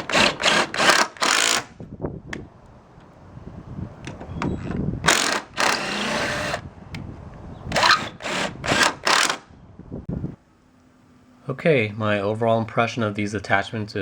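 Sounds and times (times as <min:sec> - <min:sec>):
cordless power tool bursts: 0:00.0 - 0:01.7, 0:05.0 - 0:06.6, 0:07.7 - 0:09.5.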